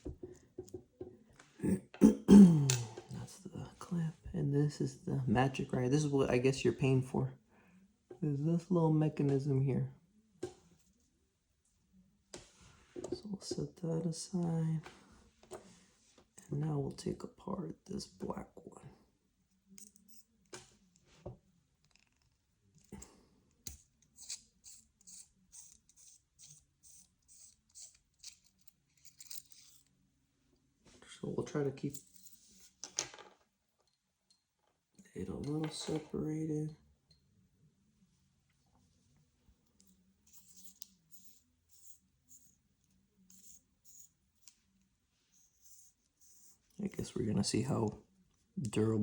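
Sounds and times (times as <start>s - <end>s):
threaded parts scratching unscrewed: 23.6s - 30.0s, 39.8s - 46.7s.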